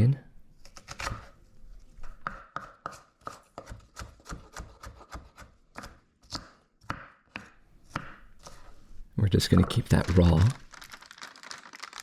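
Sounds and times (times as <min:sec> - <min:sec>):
knife chopping on cutting board: 0:02.2 - 0:08.6.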